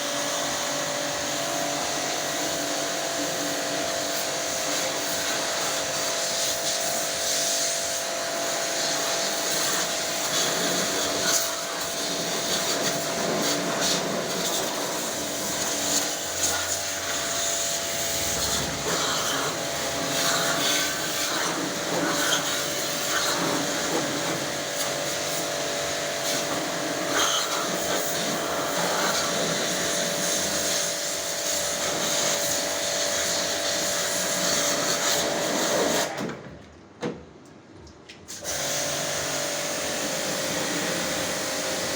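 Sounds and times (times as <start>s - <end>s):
pressure cleaner motor whine: 8.6s - 26.9s
water jet hissing: 8.8s - 23.4s.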